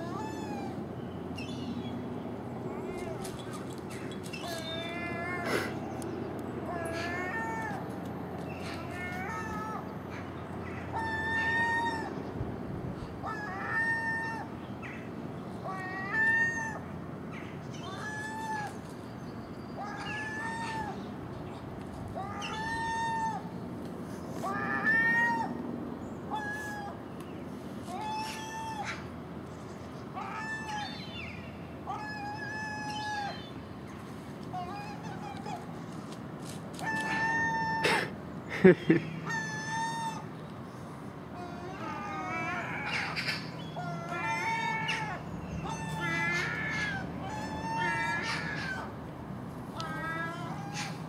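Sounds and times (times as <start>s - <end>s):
gull mewing call: 8.6s - 12.2s, 13.2s - 15.0s, 19.8s - 21.1s, 22.2s - 23.5s, 24.4s - 25.6s, 26.3s - 27.0s, 27.9s - 29.1s, 31.9s - 33.5s, 34.5s - 35.7s, 36.8s - 40.3s, 41.4s - 49.0s, 49.7s - 51.0s.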